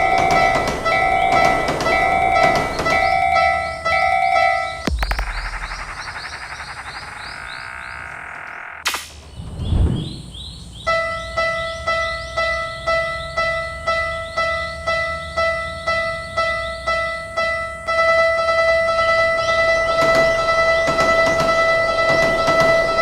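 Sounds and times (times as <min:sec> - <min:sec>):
low thud: 0:04.9 - 0:07.0.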